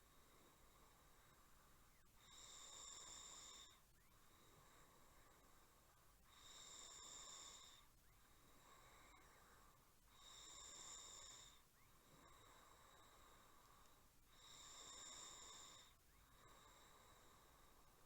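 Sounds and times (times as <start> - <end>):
person snoring faintly: 2.2 - 3.8, 6.3 - 7.9, 10.1 - 18.0.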